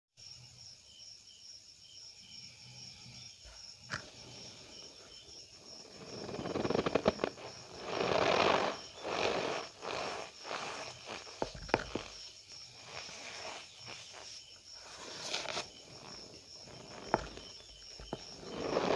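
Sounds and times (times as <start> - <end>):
cornstarch squeaking and crunching: 5.9 - 18.9.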